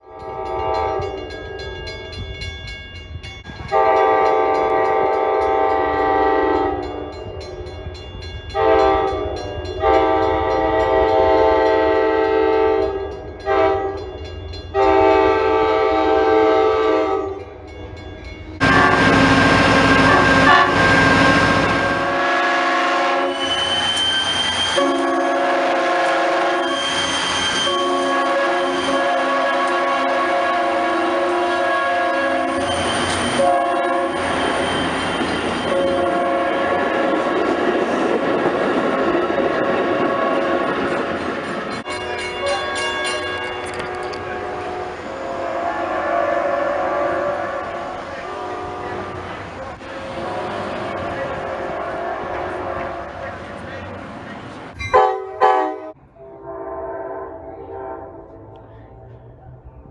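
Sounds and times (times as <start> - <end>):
train air horn: 0.0 - 1.3, 3.6 - 7.1, 8.6 - 14.0, 14.8 - 17.4, 18.6 - 34.6, 35.7 - 37.1, 42.0 - 49.2, 50.1 - 53.1, 54.8 - 58.5
low train rumble: 0.0 - 59.9
train passing close: 0.0 - 59.9.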